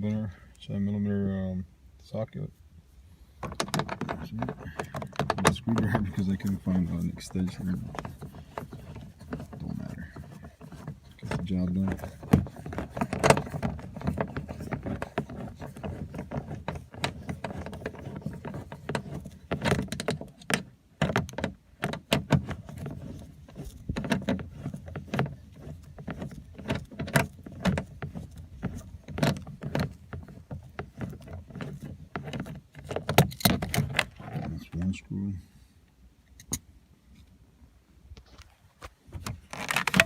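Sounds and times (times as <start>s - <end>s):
socket clinking and scraping on screw: 3.4s - 34.7s.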